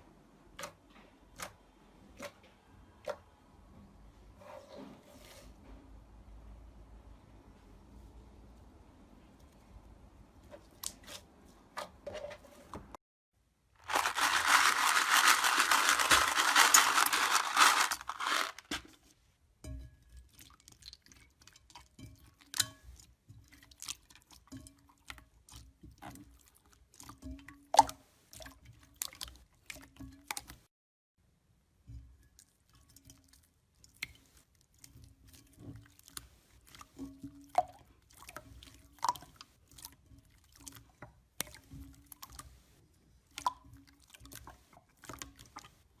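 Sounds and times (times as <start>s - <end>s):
crunchy slime crackling: 13.8s - 18.8s.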